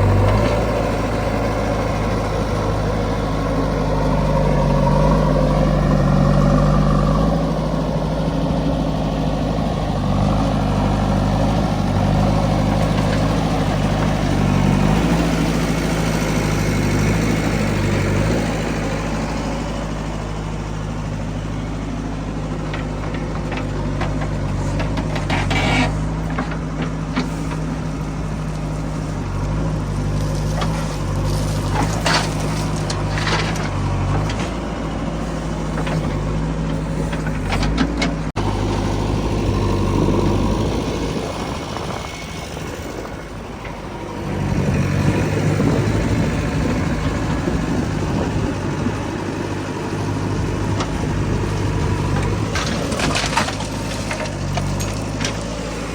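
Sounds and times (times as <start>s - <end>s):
heavy diesel engine running: 0.0s - 55.9s
rattles and clanks: 22.4s - 55.9s.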